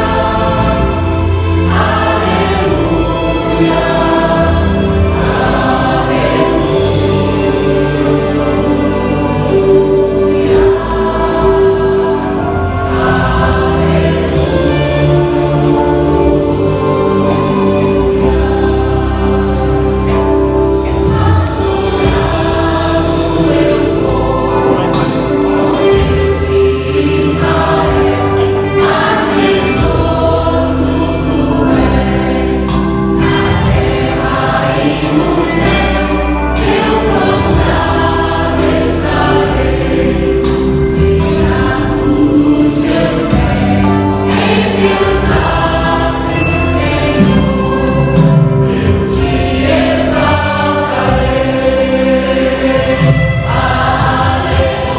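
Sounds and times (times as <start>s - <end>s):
choir singing worship song: 0.0s - 54.9s
instrumental accompaniment with beat: 0.0s - 54.9s.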